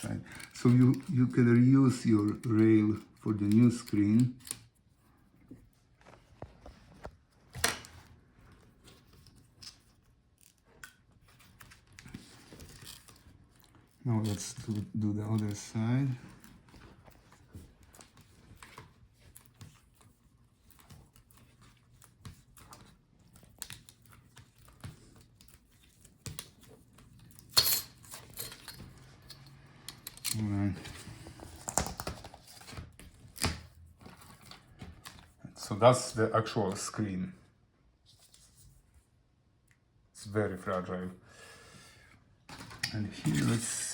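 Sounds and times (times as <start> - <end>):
small parts clicking and rustling: 8.9 - 35.3.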